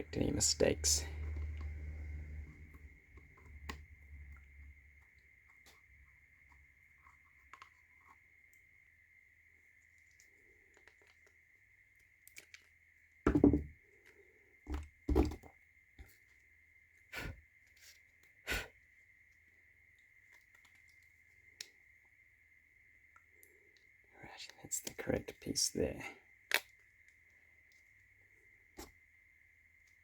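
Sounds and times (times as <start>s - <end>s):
faint high whine: 0.0s - 10.6s
wood knocks and clicks: 13.3s - 13.7s.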